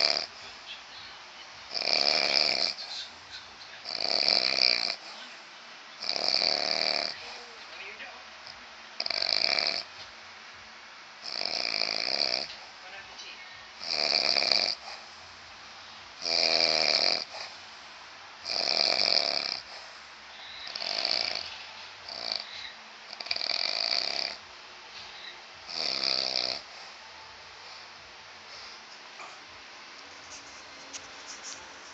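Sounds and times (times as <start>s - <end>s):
man snoring heavily: 0.0s - 0.4s, 1.7s - 2.8s, 3.8s - 5.1s, 6.0s - 7.4s, 9.0s - 9.9s, 11.2s - 12.6s, 13.8s - 15.0s, 16.2s - 17.6s, 18.4s - 19.8s, 20.6s - 24.4s, 25.6s - 27.0s.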